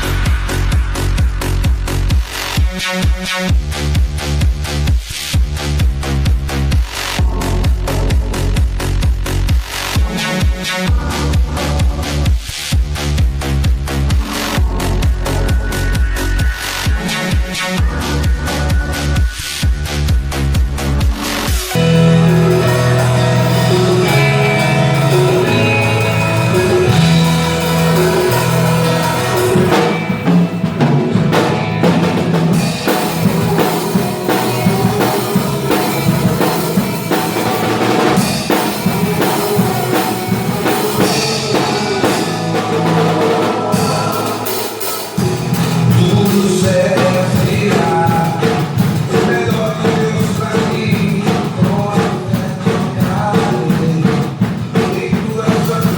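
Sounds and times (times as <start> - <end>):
low bass notes: 0.0 - 2.2, 7.2 - 9.5, 21.7 - 50.2
person singing: 21.5 - 55.9
band playing gospel song: 21.7 - 55.9.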